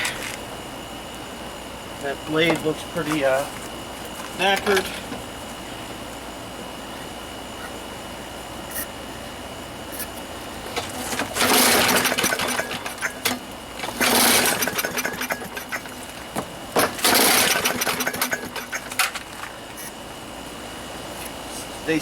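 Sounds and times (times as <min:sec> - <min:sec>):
mower engine cranking: 0:04.4 - 0:05.2, 0:10.6 - 0:19.4.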